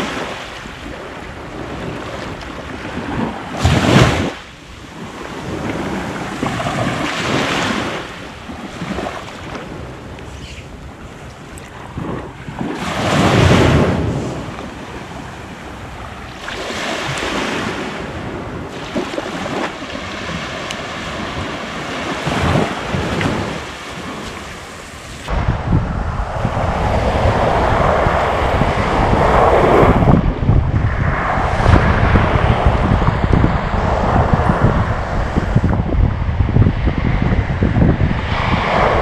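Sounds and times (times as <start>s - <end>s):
sea waves breaking on shore: 0.0s - 25.5s, 38.0s - 39.0s
low wind rumble: 0.0s - 39.0s
wind on microphone: 0.0s - 39.0s.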